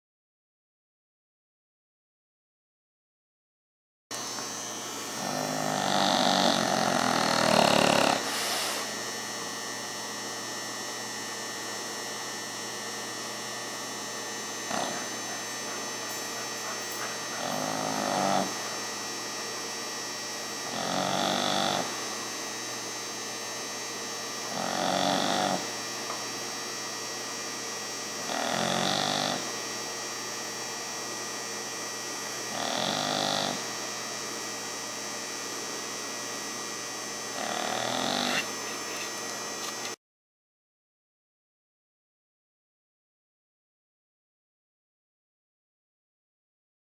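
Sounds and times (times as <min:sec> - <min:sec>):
electrical hum: 0:04.1 - 0:40.0
dog snoring: 0:05.1 - 0:09.0, 0:14.6 - 0:18.9, 0:20.5 - 0:22.1, 0:24.4 - 0:25.8, 0:28.2 - 0:29.6, 0:32.4 - 0:33.9, 0:37.3 - 0:39.9.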